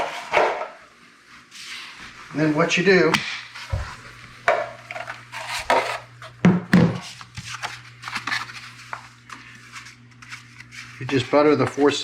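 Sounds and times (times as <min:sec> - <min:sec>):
drywall knife scraping in a mud pan: 0:05.3 - 0:06.3.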